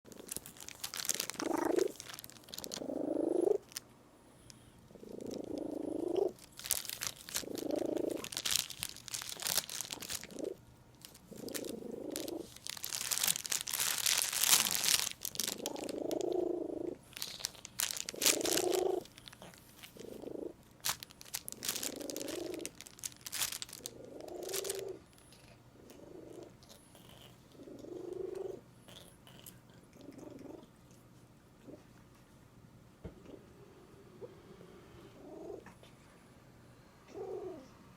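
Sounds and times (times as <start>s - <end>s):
cat crinkling plastic wrap: 0.1s - 3.9s, 4.9s - 29.5s
cat making short vocal noises: 1.2s - 2.0s.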